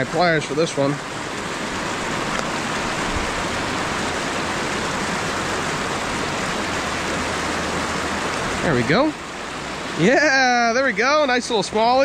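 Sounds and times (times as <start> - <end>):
creek water flowing: 0.0 - 12.0.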